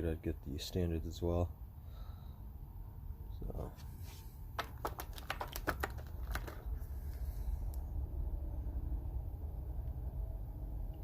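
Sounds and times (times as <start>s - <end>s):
sharp clicks and rattles: 4.6s - 6.8s.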